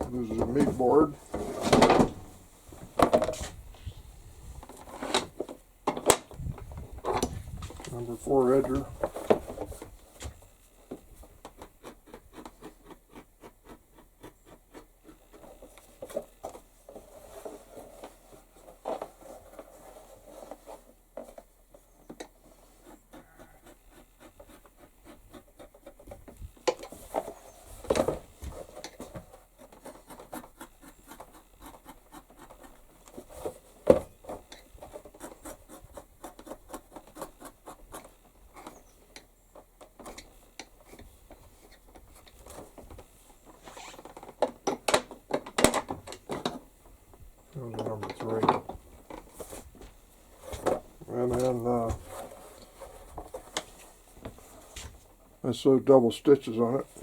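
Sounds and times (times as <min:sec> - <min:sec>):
beveler scraping leather: 0:07.9 - 0:21.0, 0:22.3 - 0:39.0, 0:39.6 - 0:44.3, 0:49.2 - 0:54.8.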